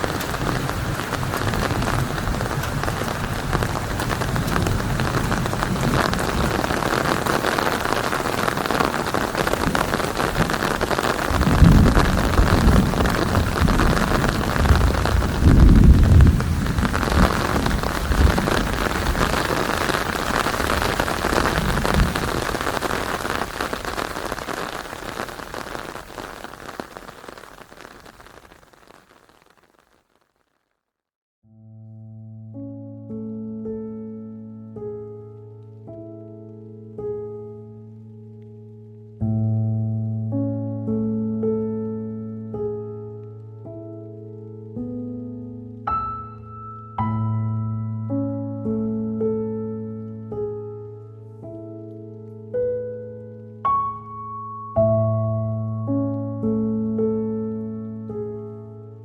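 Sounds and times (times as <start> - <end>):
low rolling thunder: 0.0 - 25.2
heavy rain: 0.0 - 30.0.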